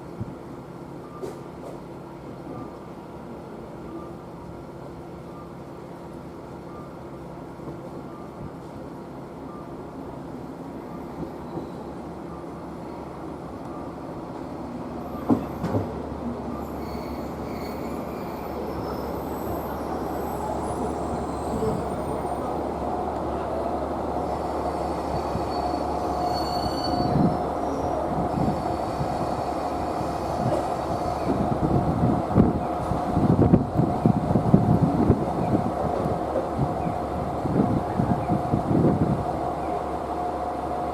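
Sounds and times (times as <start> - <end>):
train rumbling past: 0.0 - 40.9
wheel squeal: 16.6 - 22.4, 24.9 - 29.0.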